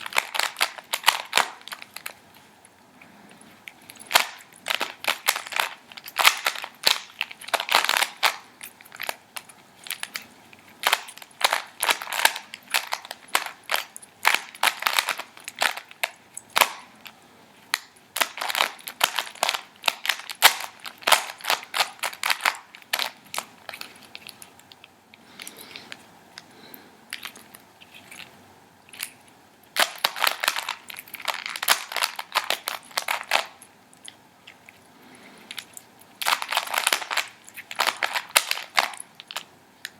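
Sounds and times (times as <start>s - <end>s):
puzzle cube turning clicks: 3.7s - 17.2s, 29.8s - 34.6s.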